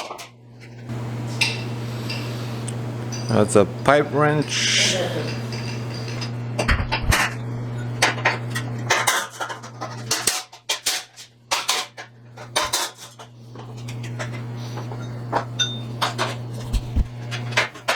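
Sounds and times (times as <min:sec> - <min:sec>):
steady low hum: 0:00.6 - 0:09.1, 0:12.3 - 0:17.7
hand tools clanking on steel: 0:03.1 - 0:06.3.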